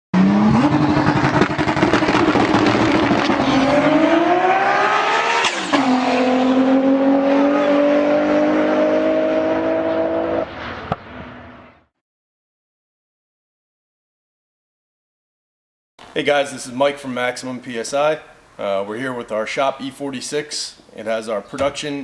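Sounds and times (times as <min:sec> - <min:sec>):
car engine accelerating hard: 0:00.2 - 0:11.8.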